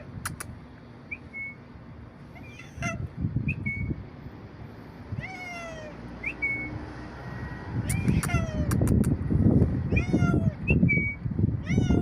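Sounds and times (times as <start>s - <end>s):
cat chirping: 2.3s - 4.0s, 5.1s - 6.7s, 7.9s - 9.0s, 9.9s - 12.0s
cat meowing: 2.4s - 3.1s, 5.1s - 6.0s, 7.9s - 8.8s, 9.9s - 10.6s, 11.6s - 12.0s.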